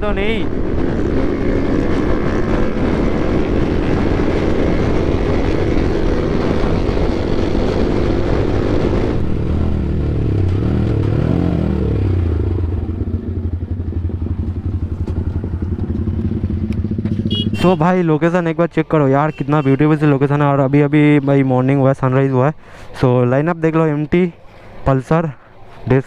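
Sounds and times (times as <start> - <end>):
motorcycle engine revving: 0.0 - 18.3
road and wind noise: 0.0 - 26.0
motorcycle engine idling: 12.6 - 17.8.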